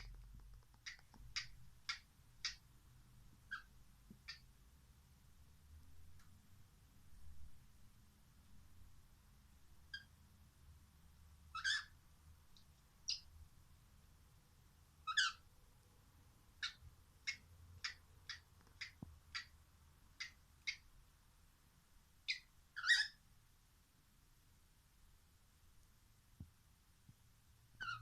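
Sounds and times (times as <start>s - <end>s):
cockatiel clicking: 0.0s - 2.6s, 16.6s - 19.5s, 20.2s - 20.8s.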